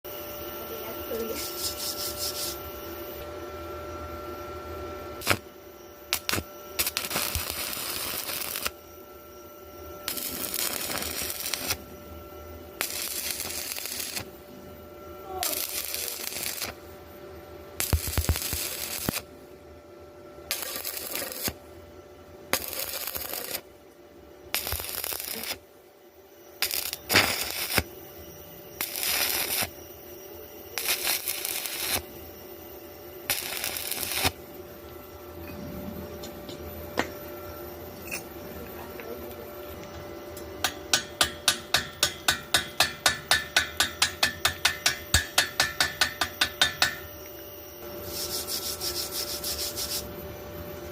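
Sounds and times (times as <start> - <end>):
welding arc crackling and hissing: 0.6 - 3.3, 5.2 - 8.9, 9.7 - 14.5, 15.2 - 17.0, 17.7 - 19.3, 20.4 - 21.7, 22.4 - 23.7, 24.5 - 25.8, 26.5 - 34.5, 39.3 - 50.2.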